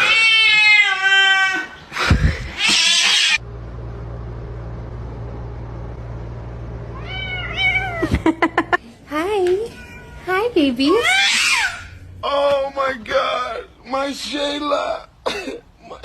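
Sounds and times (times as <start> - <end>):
cat meowing: 0.0 - 1.7, 6.9 - 8.1, 9.6 - 12.0
steady low hum: 3.4 - 16.0.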